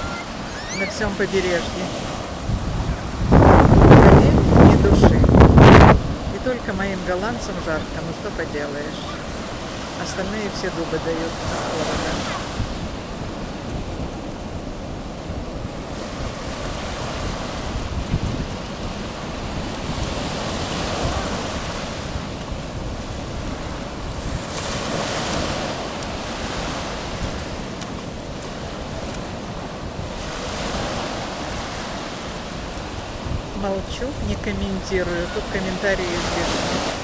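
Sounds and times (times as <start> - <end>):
sea waves breaking on shore: 0.0 - 37.0
wind buffeting microphone: 0.0 - 37.0.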